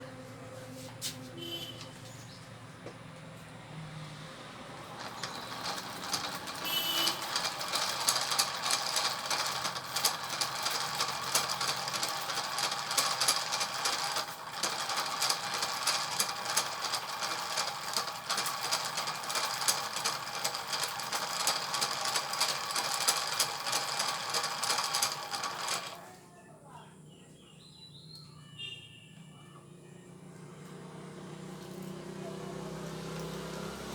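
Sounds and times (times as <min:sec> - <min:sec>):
small machine clattering: 0:04.7 - 0:26.1.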